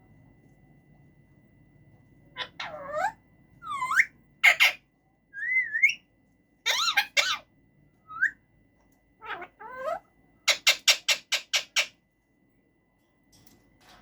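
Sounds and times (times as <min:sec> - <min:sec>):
parakeet squawk: 0:02.4 - 0:04.8, 0:06.6 - 0:07.5, 0:09.2 - 0:12.0
parakeet whistling and calling: 0:02.4 - 0:04.8, 0:05.4 - 0:06.0, 0:06.7 - 0:08.4, 0:09.2 - 0:12.0.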